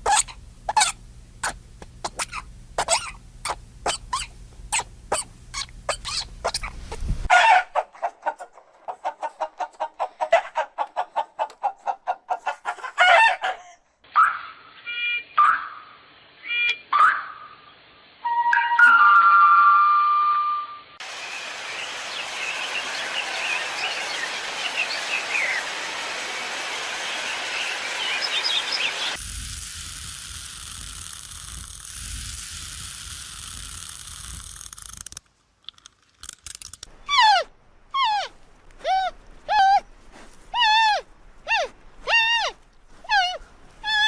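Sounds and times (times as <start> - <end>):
steady hiss: 21.0 - 35.2
birds chirping: 21.1 - 29.2.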